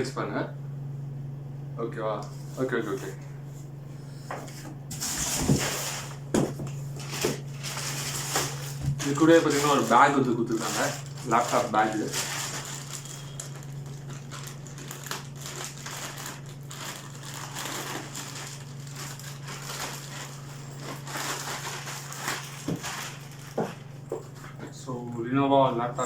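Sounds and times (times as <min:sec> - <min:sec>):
steady low hum: 0:00.0 - 0:26.0
packaging crinkling: 0:04.9 - 0:24.4.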